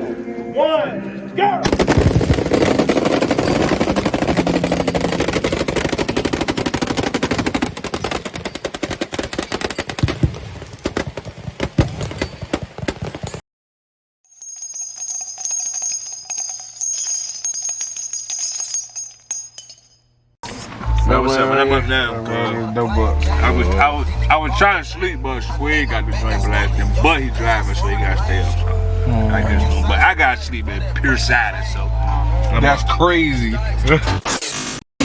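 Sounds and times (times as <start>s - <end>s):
guns firing full-auto volley: 1.6s - 13.4s
scattered ticking: 1.7s - 10.1s.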